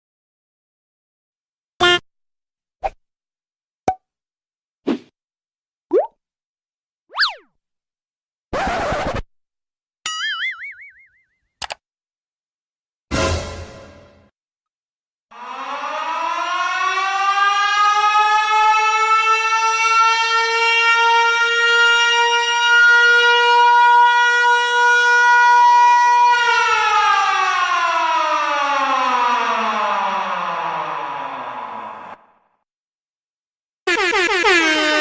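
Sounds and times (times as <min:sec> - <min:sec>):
siren winding up and down: 0:15.3 - 0:32.3, 0:33.9 - 0:35.0.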